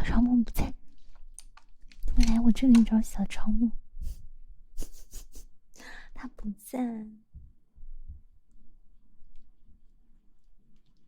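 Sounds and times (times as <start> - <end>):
woman's voice: 0.0 - 0.8, 2.1 - 3.8, 5.8 - 7.2.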